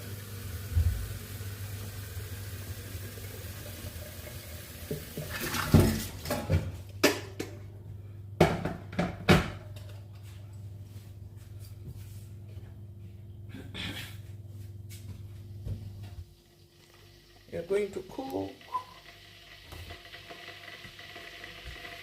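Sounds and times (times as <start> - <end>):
kitchenware knocking and clanking: 5.2 - 7.6, 8.4 - 9.9.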